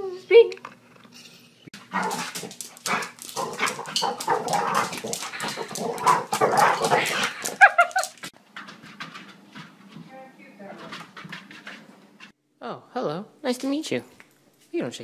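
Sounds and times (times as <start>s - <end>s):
dog barking and yipping: 1.8s - 8.3s.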